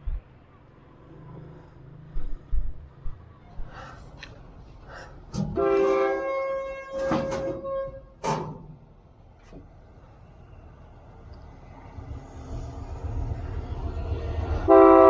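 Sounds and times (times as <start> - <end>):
train horn: 5.4 - 8.2, 14.6 - 15.0.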